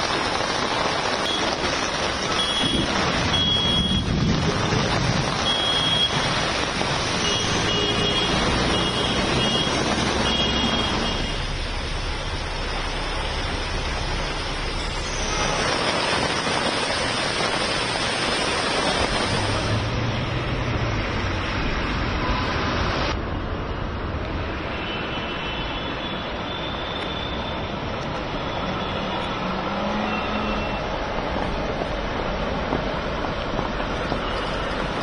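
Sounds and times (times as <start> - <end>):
heavy rain and water: 0.0 - 35.0
vehicles driving on wet road: 0.0 - 35.0.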